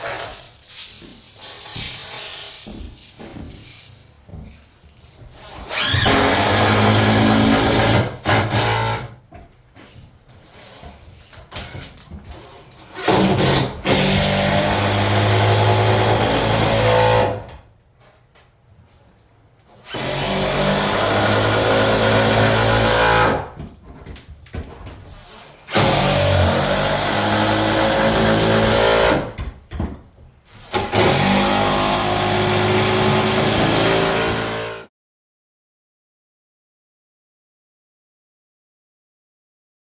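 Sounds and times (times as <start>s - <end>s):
power tool running: 30.8s - 34.8s.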